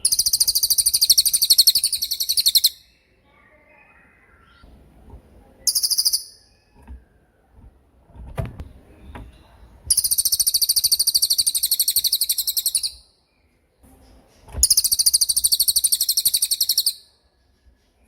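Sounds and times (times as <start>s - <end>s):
songbird rapid trills: 0.0s - 2.8s, 14.6s - 17.0s.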